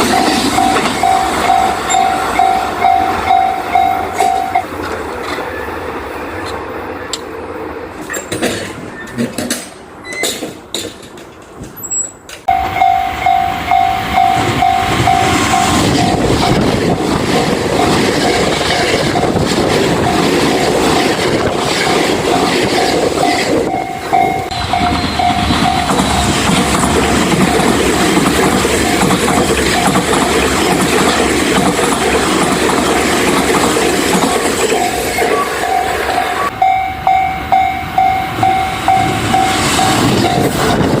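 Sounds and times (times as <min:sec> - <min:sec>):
level crossing warning bell: 0:00.0 - 0:04.7, 0:12.5 - 0:16.7, 0:23.2 - 0:30.5, 0:34.6 - 0:40.7
passing train rumble and clatter: 0:00.0 - 0:41.0.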